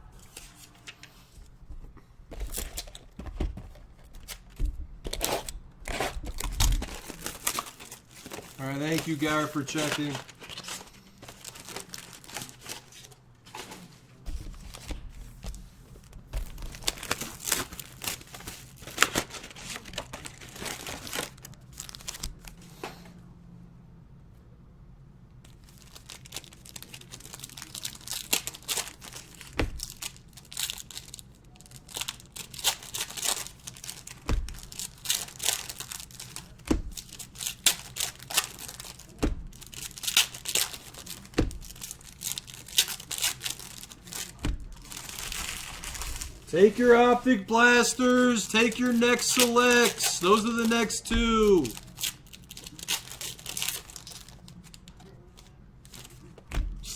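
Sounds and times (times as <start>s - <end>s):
plastic wrapping torn and crinkled: 5.1s - 13.2s, 16.4s - 22.6s, 25.5s - 47.1s, 51.6s - 56.9s.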